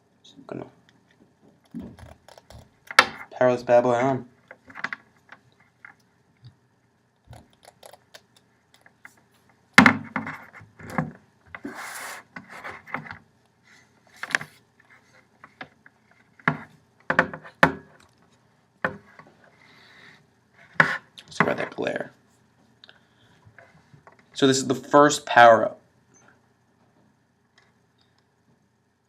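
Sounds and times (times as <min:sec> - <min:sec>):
tablet handling clicks and knocks: 0:07.3 - 0:09.0.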